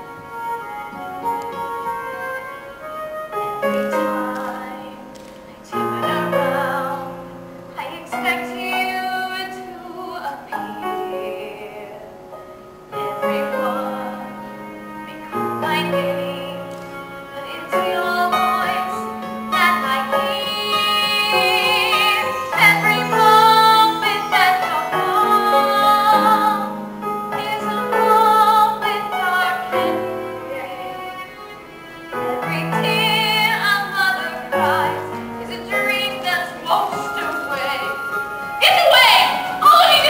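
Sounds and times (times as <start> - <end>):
instrumental accompaniment: 0.0 - 40.0
woman singing theatrically: 38.6 - 40.0.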